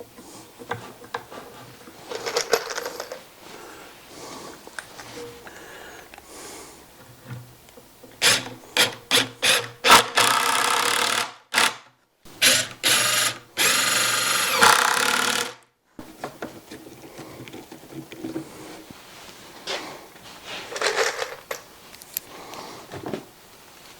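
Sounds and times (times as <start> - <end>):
power driver driving screws: 8.2 - 11.8, 12.4 - 15.6.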